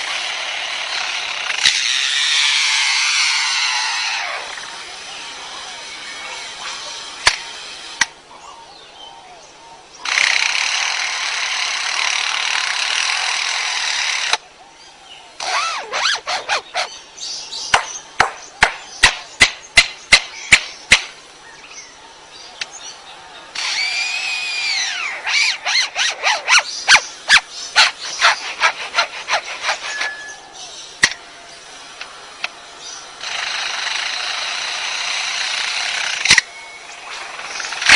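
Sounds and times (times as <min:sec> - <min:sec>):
lyrebird wavering whine: 0:00.0 - 0:10.2, 0:21.8 - 0:37.9
lyrebird rasping: 0:15.4 - 0:17.0, 0:24.6 - 0:30.8.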